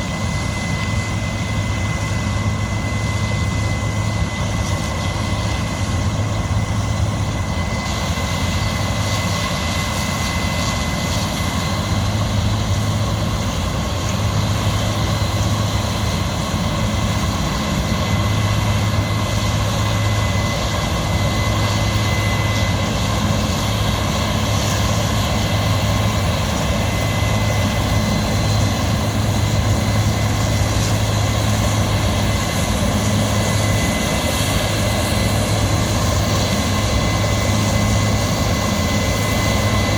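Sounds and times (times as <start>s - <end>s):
thin steady whine: 0.0s - 39.9s.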